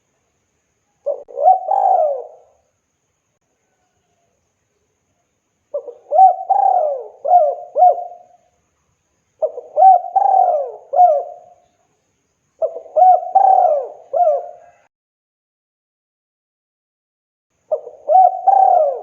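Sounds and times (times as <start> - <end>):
dove cooing: 1.0 - 2.6, 5.7 - 8.4, 9.4 - 11.6, 12.6 - 14.9, 17.7 - 19.0.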